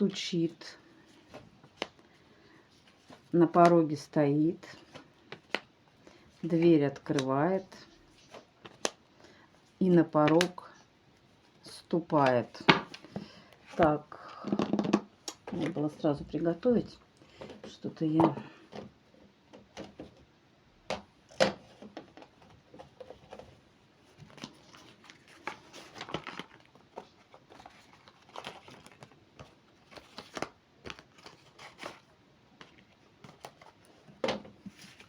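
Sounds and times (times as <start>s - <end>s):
cards clicking and rustling: 24.2s - 32.0s.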